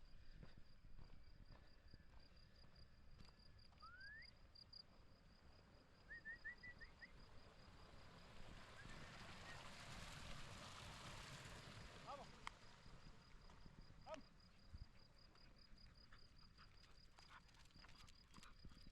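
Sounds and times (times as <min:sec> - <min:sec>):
rising bird whistle: 0:03.8 - 0:04.4, 0:06.1 - 0:07.2.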